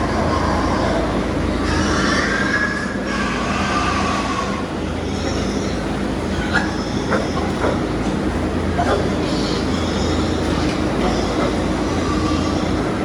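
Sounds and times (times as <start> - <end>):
machine noise with low hum: 0.0 - 13.0.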